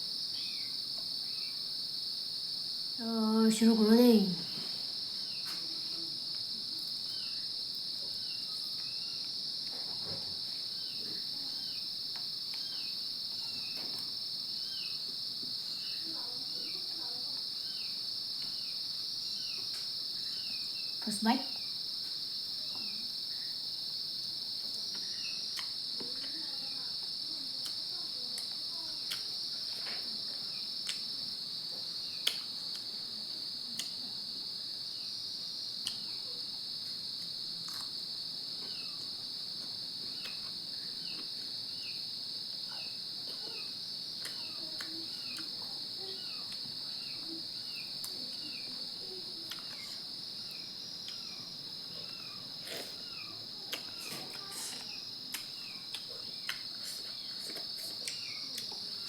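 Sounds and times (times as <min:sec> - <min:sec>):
crickets chirring: 0:00.0 - 0:59.0
person eating and chewing: 0:37.7 - 0:37.9.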